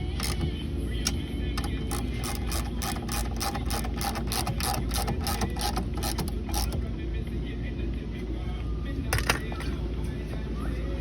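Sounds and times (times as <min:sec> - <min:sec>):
rapid ratcheting clicks: 0:00.0 - 0:06.9
steady low hum: 0:00.0 - 0:11.0.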